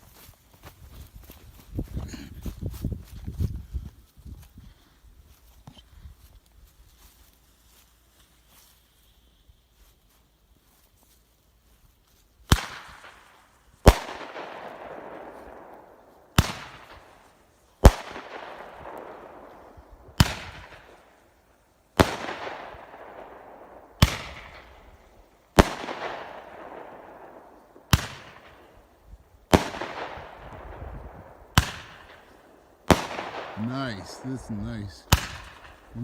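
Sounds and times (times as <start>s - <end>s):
roman candle firework bangs: 12.5s - 13.3s, 13.9s - 15.6s, 16.4s - 17.2s, 17.9s - 21.0s, 22.0s - 24.8s, 25.6s - 27.3s, 27.9s - 28.7s, 29.5s - 35.9s.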